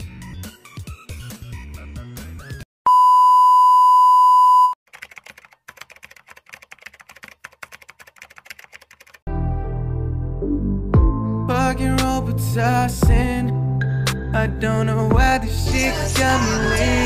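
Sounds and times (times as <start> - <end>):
electronic beep tone: 2.9 - 4.8
faint rapid clicking: 4.9 - 9.2
music with deep bass: 9.3 - 17.0.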